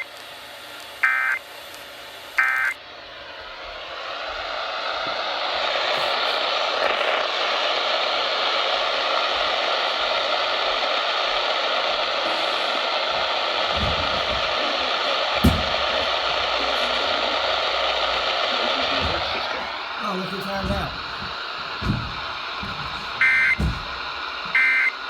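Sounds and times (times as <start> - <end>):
radio static hiss: 0.0 - 25.0
low thumps: 12.5 - 24.8.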